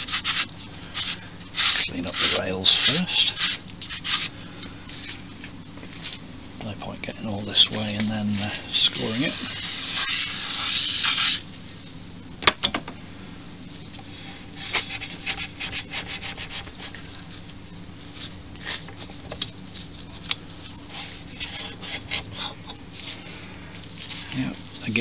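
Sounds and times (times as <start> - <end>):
rag wiping metal rails: 1.0 - 4.2.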